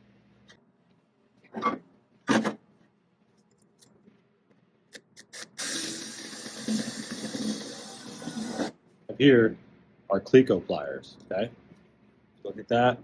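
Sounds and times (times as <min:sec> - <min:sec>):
drill boring through sheet metal: 0:05.3 - 0:08.8.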